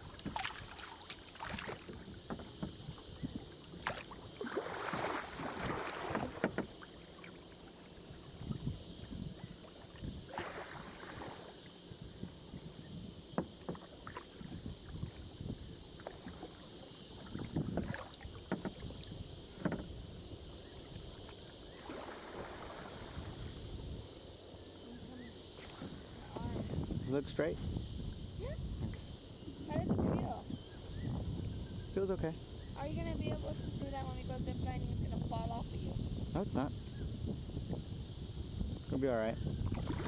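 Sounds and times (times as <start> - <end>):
paddle splashing through water: 0.0 - 3.0, 3.6 - 8.2, 9.6 - 11.6, 13.4 - 15.3, 15.9 - 19.8, 21.2 - 23.4, 39.6 - 40.0
steady hiss: 0.0 - 40.0.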